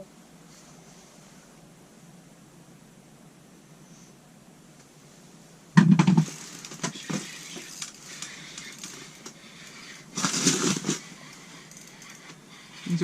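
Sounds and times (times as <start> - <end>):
loud thump with clatter: 5.8 - 7.0.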